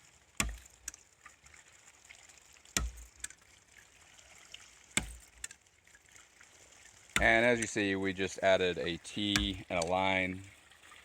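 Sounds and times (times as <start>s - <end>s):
water trickling: 0.0s - 11.0s
pump valve clacking: 7.2s - 7.8s, 9.2s - 10.0s.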